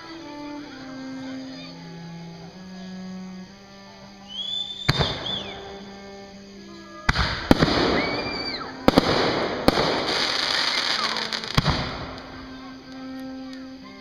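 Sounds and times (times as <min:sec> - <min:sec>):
crackling hiss: 0:00.0 - 0:14.0
firework shells bursting: 0:04.4 - 0:05.7, 0:07.1 - 0:13.6.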